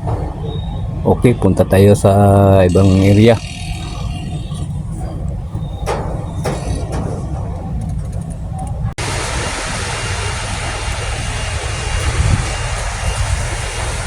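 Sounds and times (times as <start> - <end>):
vehicle rumble: 0.0 - 14.0
rushing hiss: 9.0 - 14.0.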